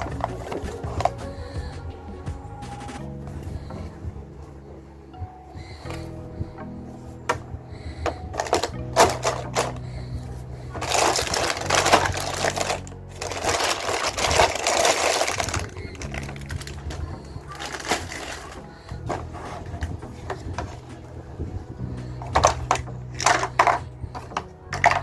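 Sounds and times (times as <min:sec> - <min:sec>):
marbles clattering on plastic: 0:10.7 - 0:16.9.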